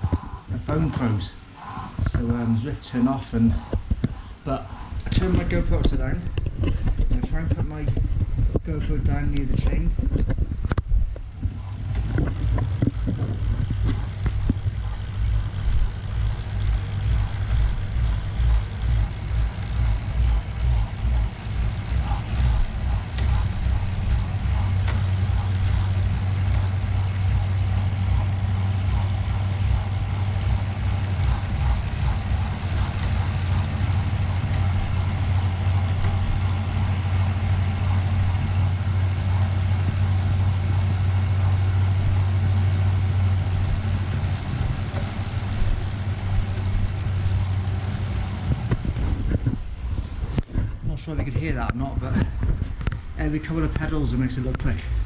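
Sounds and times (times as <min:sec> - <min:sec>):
bike drivetrain spinning: 0:00.0 - 0:55.0
trainer low hum: 0:00.0 - 0:55.0
faint chain ticks: 0:11.2 - 0:49.6.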